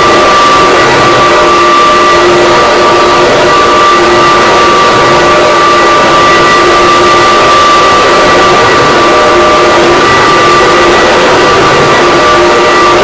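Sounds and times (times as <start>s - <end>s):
vacuum cleaner running: 0.0s - 13.0s.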